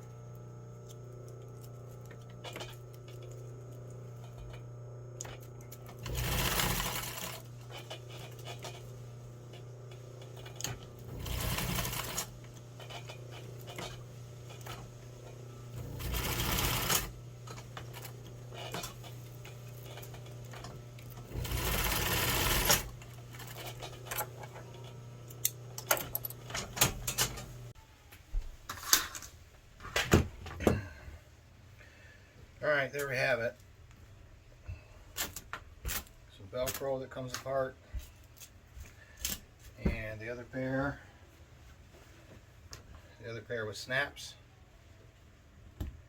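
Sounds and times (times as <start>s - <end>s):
sewing machine hum: 0.0s - 27.7s
sewing machine stitching: 1.5s - 27.6s.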